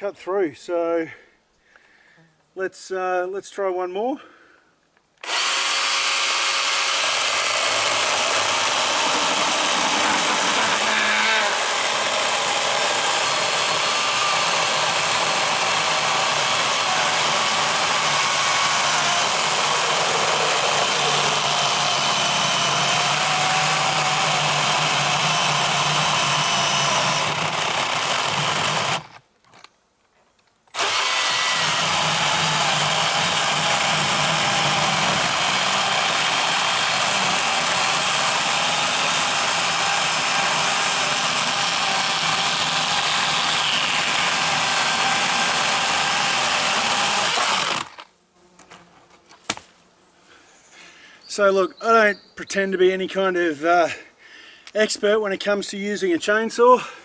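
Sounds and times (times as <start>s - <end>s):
chainsaw cutting log: 5.2s - 29.7s, 30.7s - 48.8s.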